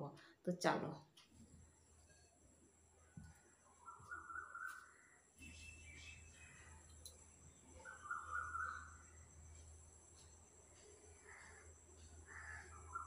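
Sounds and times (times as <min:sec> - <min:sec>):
harsh bird calls: 0:07.8 - 0:09.0.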